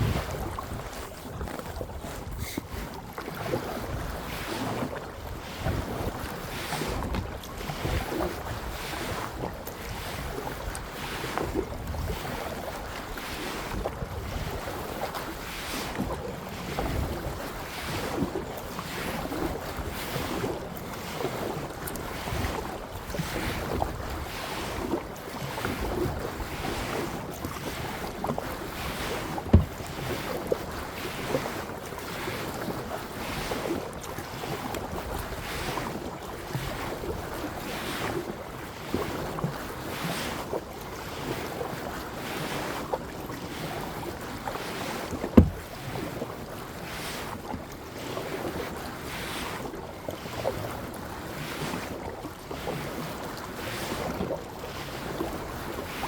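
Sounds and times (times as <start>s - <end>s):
wind buffeting microphone: 0.0s - 10.8s, 25.8s - 30.8s
paddle splashing water: 0.0s - 56.0s
sharp knock: 45.4s - 45.6s.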